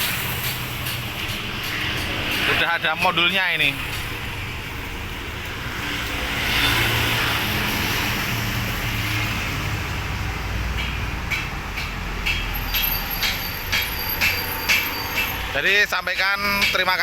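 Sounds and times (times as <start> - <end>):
motor vehicle passing: 3.8 - 11.3.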